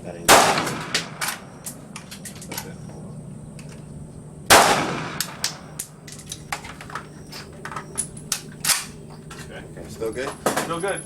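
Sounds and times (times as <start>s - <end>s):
gunshot: 0.3s - 1.5s, 4.5s - 5.7s
small clicks and knocks: 5.2s - 9.6s.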